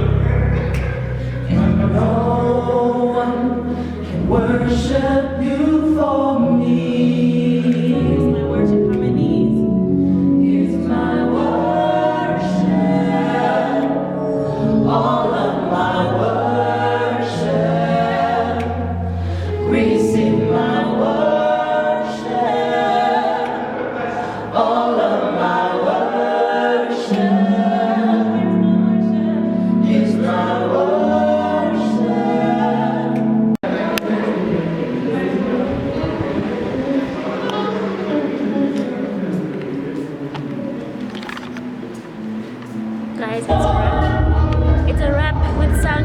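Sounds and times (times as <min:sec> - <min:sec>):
instrumental backing with bass: 0:00.0 - 0:25.1, 0:40.7 - 0:46.0
choir singing gospel music: 0:00.0 - 0:46.0.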